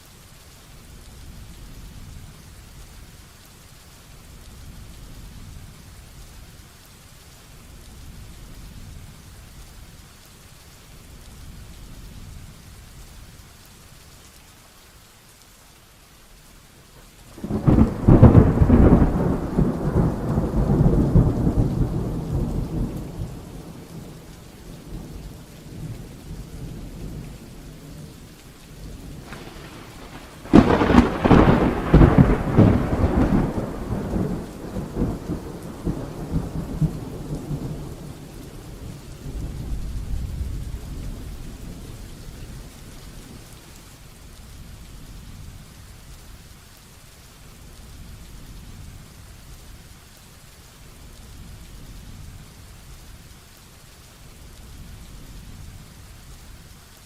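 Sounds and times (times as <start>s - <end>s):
heavy rain falling: 0.0s - 57.0s
loud thunderclaps rumbling: 17.4s - 28.1s, 28.9s - 43.4s.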